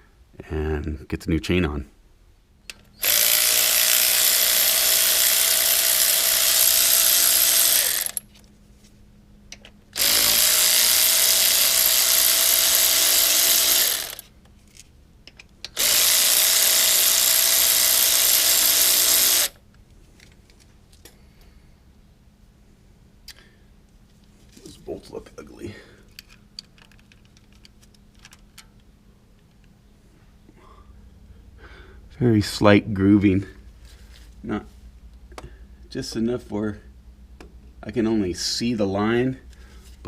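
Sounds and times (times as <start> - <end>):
cordless power tool whine: 3.0 - 8.2, 10.0 - 14.3, 15.7 - 19.6.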